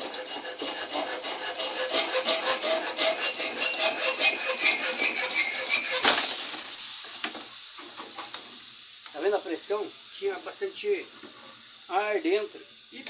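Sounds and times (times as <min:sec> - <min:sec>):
hacksaw rasping through pipe: 0:00.0 - 0:06.8
loud hiss of escaping pressure: 0:00.0 - 0:13.0.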